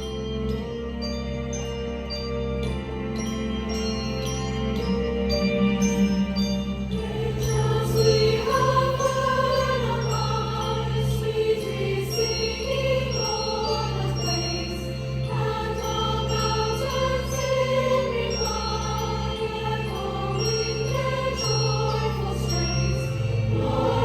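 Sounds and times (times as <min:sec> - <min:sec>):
orchestral accompaniment: 0:00.0 - 0:24.0
large choir singing: 0:06.9 - 0:24.0.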